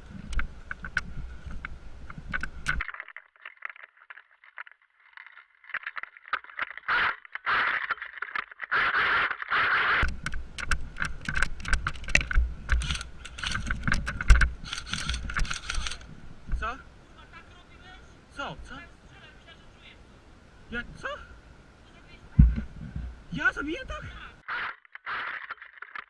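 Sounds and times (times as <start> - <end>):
gear rattling and scraping: 2.3 - 16.1.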